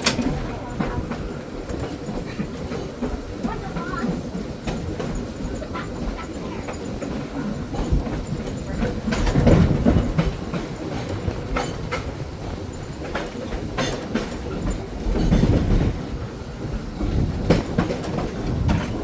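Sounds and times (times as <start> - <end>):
trolley wheels rumbling on rails: 0.0 - 19.0.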